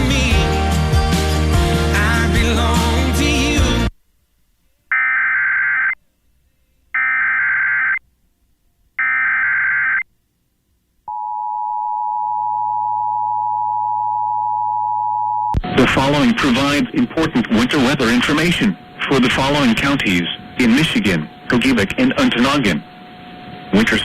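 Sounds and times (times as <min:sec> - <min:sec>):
steady warning alarm tone: 0:04.9 - 0:06.0, 0:07.0 - 0:08.0, 0:09.0 - 0:10.0, 0:11.1 - 0:24.0
warbling digital data tones: 0:04.9 - 0:06.0, 0:07.0 - 0:08.0, 0:09.0 - 0:10.0, 0:12.2 - 0:24.0.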